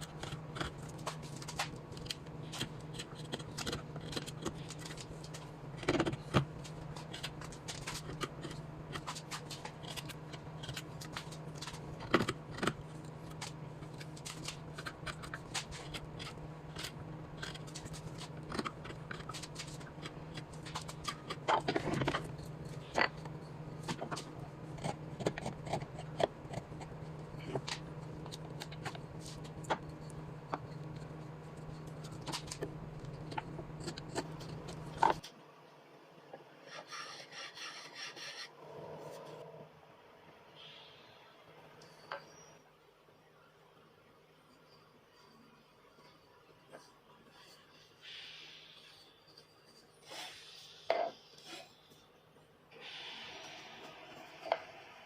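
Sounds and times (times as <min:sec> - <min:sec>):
steady low hum: 0:00.0 - 0:42.1
hand tool scraping wood: 0:36.7 - 0:38.5.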